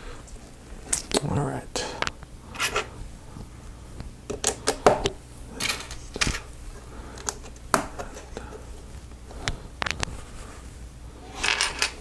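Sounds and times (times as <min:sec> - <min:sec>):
plastic bricks clicking and clattering: 0:11.4 - 0:12.0.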